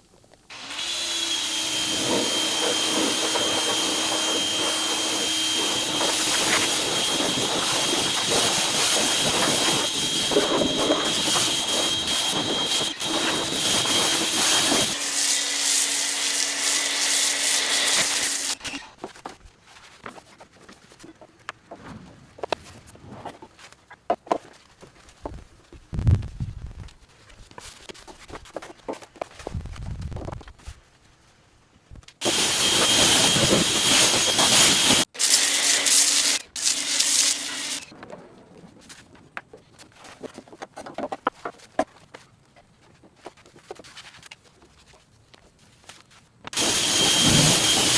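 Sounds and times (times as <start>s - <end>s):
pressure washer water hiss: 2.0s - 18.6s, 32.2s - 37.9s.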